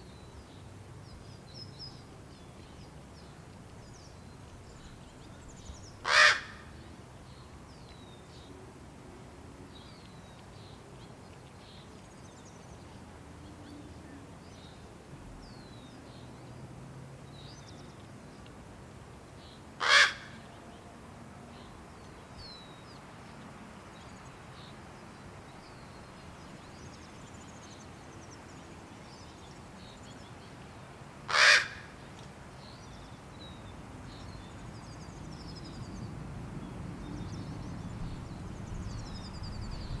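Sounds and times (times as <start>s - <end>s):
young raven calling: 6.0s - 6.8s, 19.8s - 20.5s, 31.3s - 32.0s.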